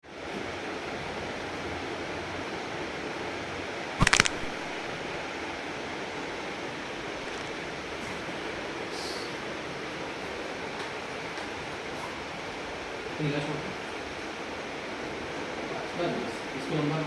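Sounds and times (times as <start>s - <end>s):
sharp cracks: 4.0s - 4.8s.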